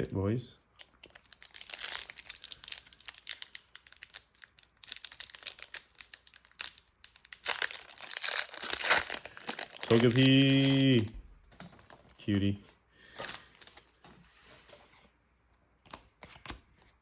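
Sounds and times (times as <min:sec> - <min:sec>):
foil wrapper crinkling: 0:00.7 - 0:12.3, 0:13.0 - 0:14.0
foil pack tearing open: 0:00.8 - 0:11.0.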